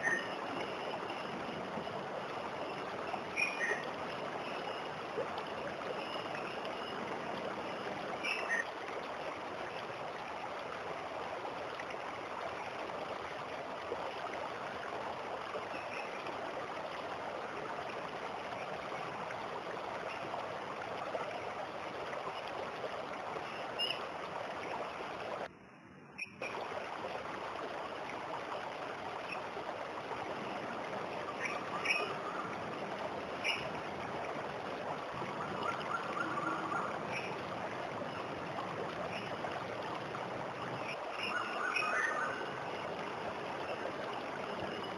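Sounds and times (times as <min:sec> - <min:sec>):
faint bird chirps: 0:03.3 - 0:03.9, 0:40.8 - 0:42.5.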